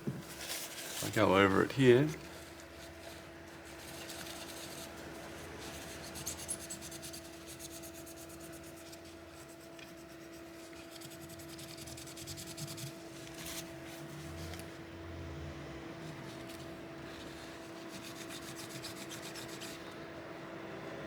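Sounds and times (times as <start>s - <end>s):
scratchy scrubbing strokes: 16.2s - 20.0s.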